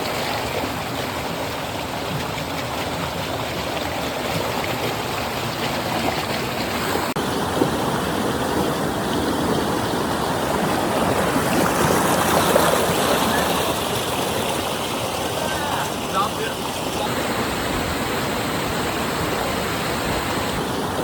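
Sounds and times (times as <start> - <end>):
flowing water rushing: 0.0 - 21.0.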